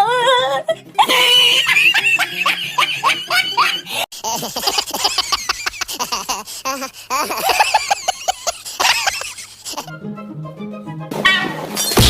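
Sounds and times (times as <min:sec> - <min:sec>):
person laughing: 0:00.8 - 0:09.9.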